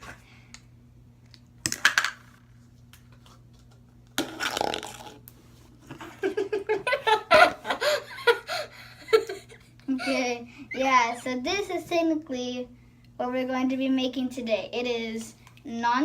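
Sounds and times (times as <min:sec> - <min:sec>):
person giggling: 0:06.0 - 0:11.4.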